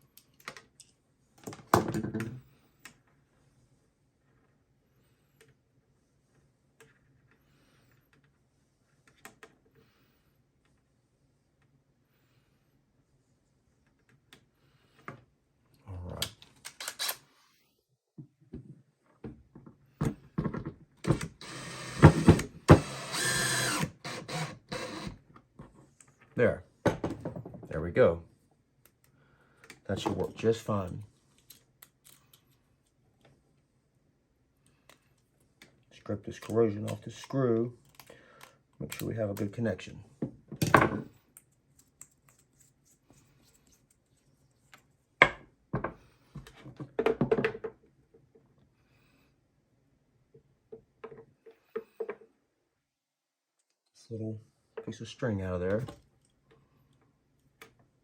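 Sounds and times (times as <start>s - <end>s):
cordless drill driving screw: 16.7s - 17.2s, 21.0s - 25.2s.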